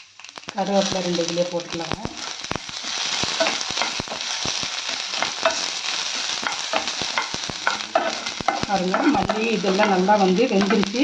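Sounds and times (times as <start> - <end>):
spices sizzling and crackling in oil: 0.0 - 11.0
spoon stirring in a pan: 2.2 - 11.0.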